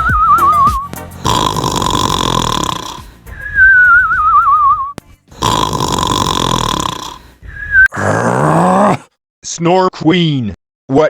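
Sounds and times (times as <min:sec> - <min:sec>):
cartoon snoring with whistle: 0:00.3 - 0:09.1.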